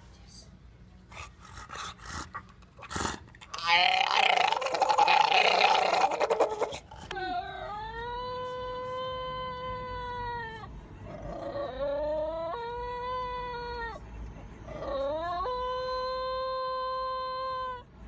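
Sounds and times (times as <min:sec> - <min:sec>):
pet howling: 0:03.5 - 0:14.0, 0:14.7 - 0:17.9.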